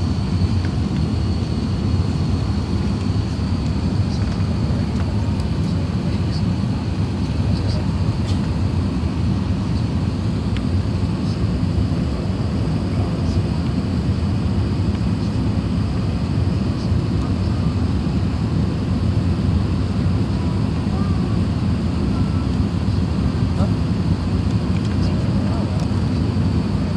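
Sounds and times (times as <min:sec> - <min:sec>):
aircraft cabin engine rumble: 0:00.0 - 0:26.9.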